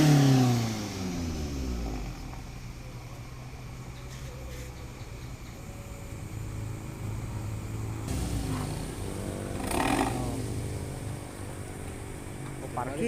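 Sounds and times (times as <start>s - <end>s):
car engine revving: 0.0s - 2.9s, 6.2s - 13.0s.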